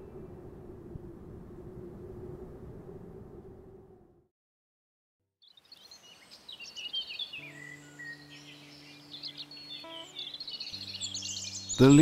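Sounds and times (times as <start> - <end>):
small birds chirping: 5.4 - 12.0.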